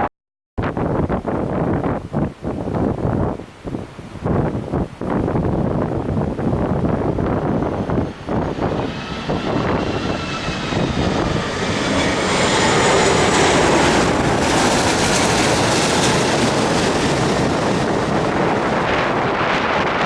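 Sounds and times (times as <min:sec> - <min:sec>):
jet airliner passing overhead: 0:05.4 - 0:20.0.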